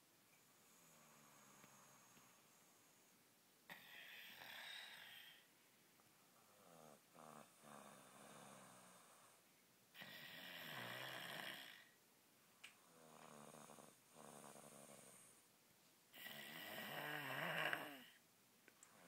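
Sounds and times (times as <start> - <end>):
child snoring: 3.7 - 5.5, 10.0 - 12.0, 12.9 - 15.4, 16.1 - 18.2.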